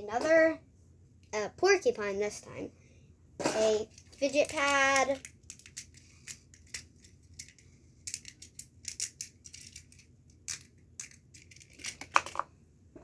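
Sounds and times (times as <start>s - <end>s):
plastic toys clicking and rustling: 3.8s - 12.5s.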